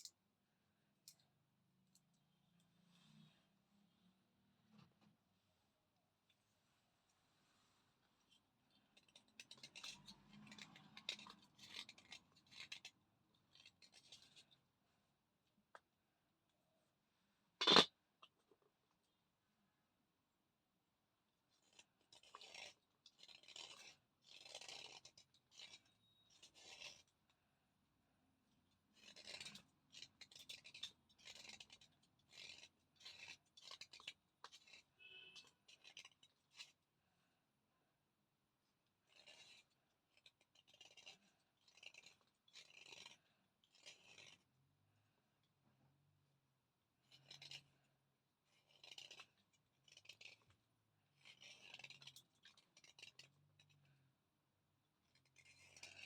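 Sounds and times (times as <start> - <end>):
slate pencil crunching being chewed: 8.8 - 14.5, 21.6 - 27.2, 28.8 - 36.8, 39.1 - 44.6, 47.0 - 47.9, 48.5 - 54.0, 55.1 - 56.0.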